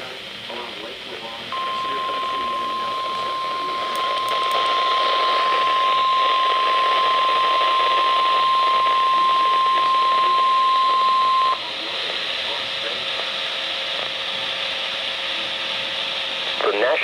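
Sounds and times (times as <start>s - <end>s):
radio static hiss: 0.0s - 17.0s
high-pitched warning tone: 1.5s - 11.8s.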